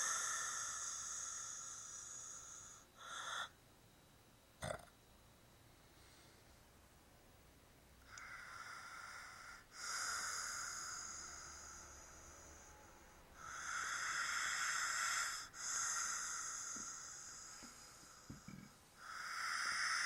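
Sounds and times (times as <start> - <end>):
man snoring wheezily: 0.0 - 3.6, 8.1 - 12.8, 13.4 - 20.0.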